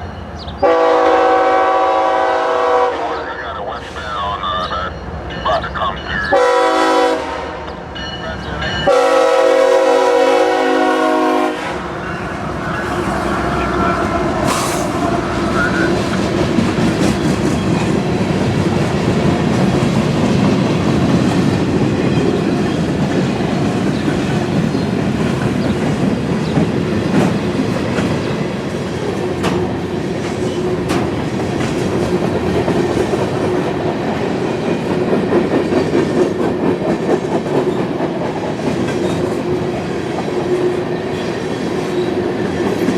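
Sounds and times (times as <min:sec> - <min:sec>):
locomotive horn: 0:00.6 - 0:03.3, 0:06.3 - 0:07.8, 0:08.8 - 0:16.0
train wheels on rails: 0:04.0 - 0:42.9.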